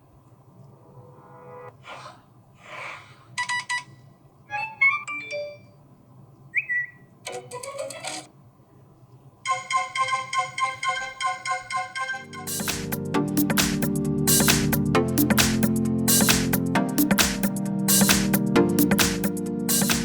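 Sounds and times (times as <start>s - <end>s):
phone notification tones: 4.5s - 5.8s
rapid repeating bright tones: 9.5s - 16.6s.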